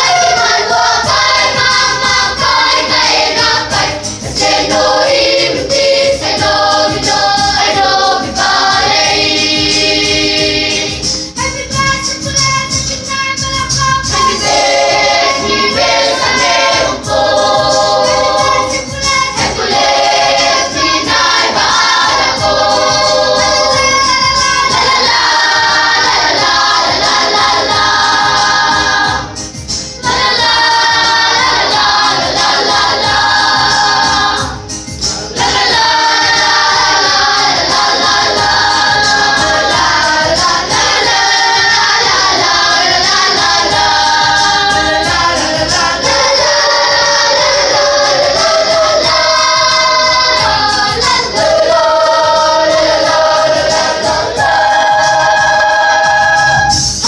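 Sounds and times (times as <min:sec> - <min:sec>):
children's choir singing: 0:00.0 - 0:57.0.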